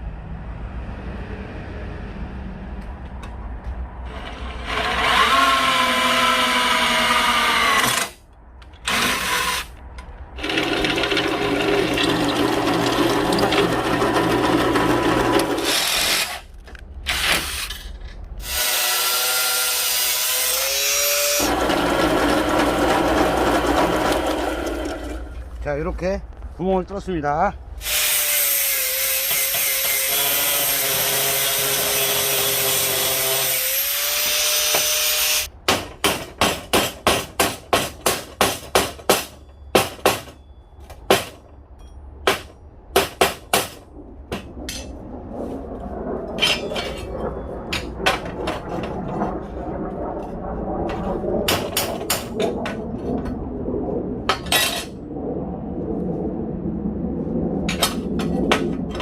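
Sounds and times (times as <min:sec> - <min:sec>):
power tool running: 0:10.4 - 0:16.4, 0:18.4 - 0:25.2
low rough noise: 0:40.4 - 0:59.0.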